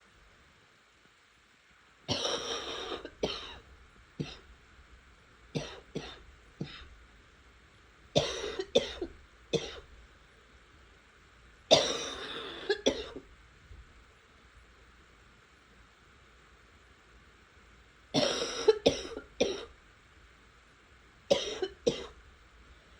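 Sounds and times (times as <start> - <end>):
person coughing: 2.1 - 3.6, 4.2 - 4.4, 5.6 - 6.9, 8.2 - 9.8, 11.7 - 13.2, 18.2 - 19.7, 21.3 - 22.2.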